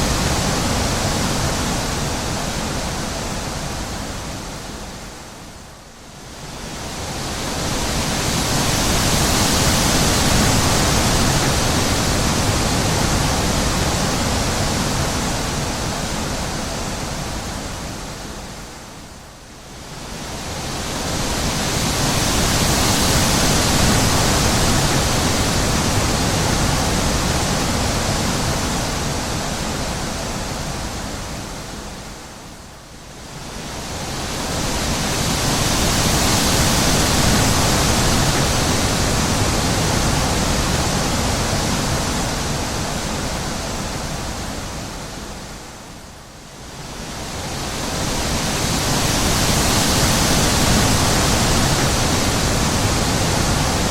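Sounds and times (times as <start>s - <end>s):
wind blowing in gusts: 0.0s - 53.9s.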